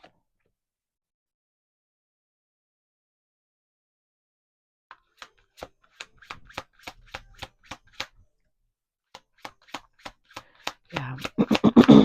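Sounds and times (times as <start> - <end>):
cards being shuffled: 5.1 - 8.2, 9.1 - 12.0.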